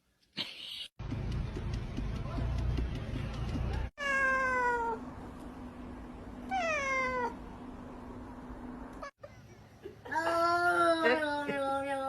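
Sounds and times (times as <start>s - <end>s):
cat meowing: 6.5s - 7.4s.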